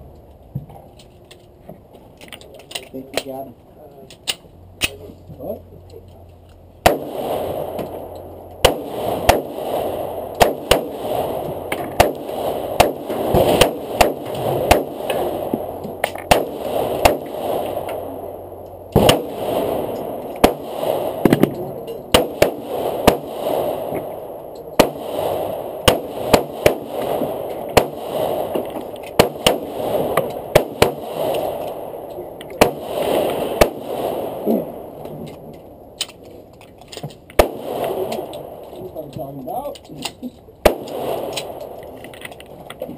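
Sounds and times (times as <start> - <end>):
steady background noise: 0.0 - 42.9
handgun shots: 10.4 - 10.9, 11.8 - 15.2.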